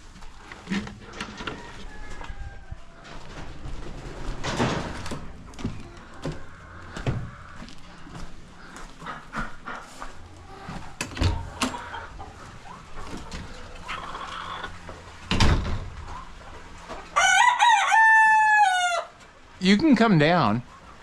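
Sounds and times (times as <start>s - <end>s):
chickens clucking: 0.0s - 17.9s, 18.6s - 21.0s
rooster crowing: 1.1s - 3.2s, 17.1s - 19.2s.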